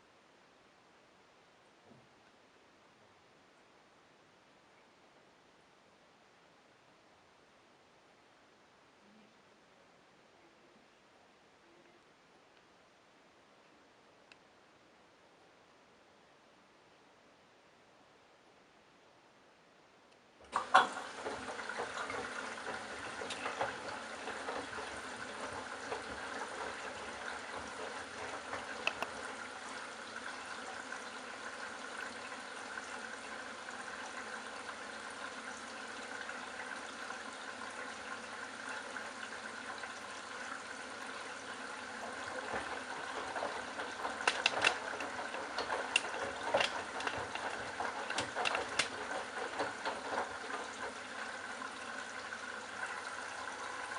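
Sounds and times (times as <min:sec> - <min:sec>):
washing machine click: 0:20.4 - 0:29.6, 0:42.0 - 0:51.4
water running in: 0:20.5 - 0:53.9.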